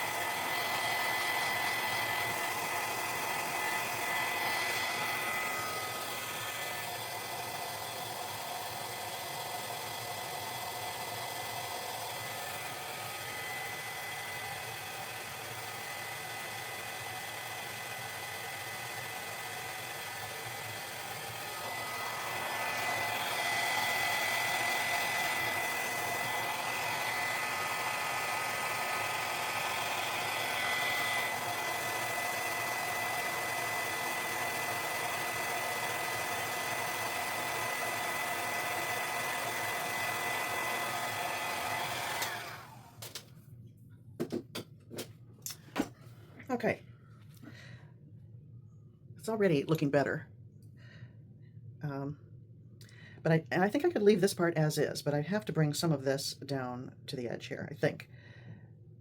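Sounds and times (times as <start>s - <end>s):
hot-air blower running: 0.0s - 43.4s, 44.2s - 46.0s.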